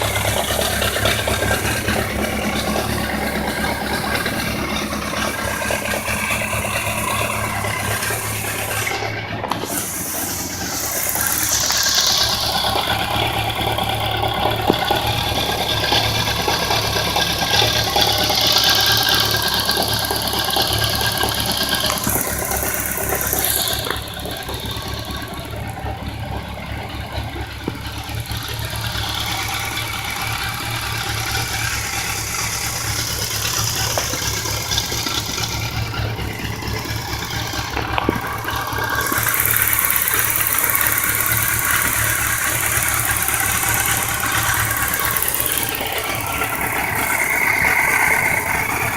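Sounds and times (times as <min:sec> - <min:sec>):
engine knocking: 0:00.0 - 0:48.9
fast ticking noise: 0:00.0 - 0:48.9
motorcycle engine idling: 0:00.0 - 0:48.9.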